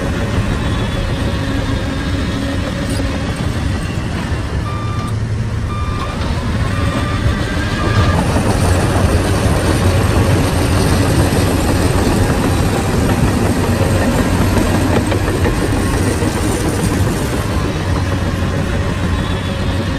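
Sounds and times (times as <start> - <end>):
bulldozer diesel engine running: 0.0 - 19.9
reversing alarm beeps: 3.8 - 8.6.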